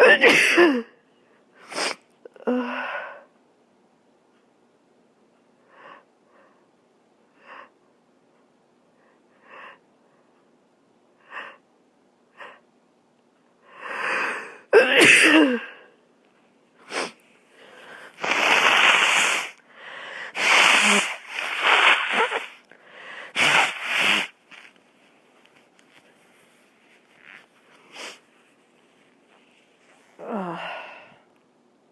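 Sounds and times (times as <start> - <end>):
loud sneeze: 0.0 - 0.9, 14.7 - 15.8, 18.2 - 19.6, 20.3 - 22.6, 23.3 - 24.4
noisy breath through nose: 1.6 - 2.0, 16.8 - 24.7, 25.9 - 28.4
person sniffing: 1.6 - 2.0, 16.8 - 24.8, 27.2 - 28.3.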